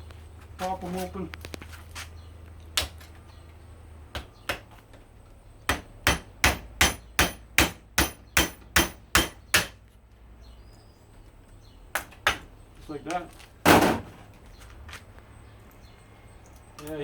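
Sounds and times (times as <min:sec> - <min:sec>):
hammer striking chisel on metal: 0:05.7 - 0:09.8.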